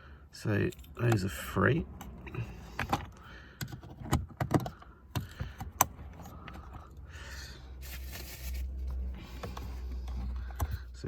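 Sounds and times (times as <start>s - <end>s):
clicks and taps of screws and tools: 2.0s - 6.8s.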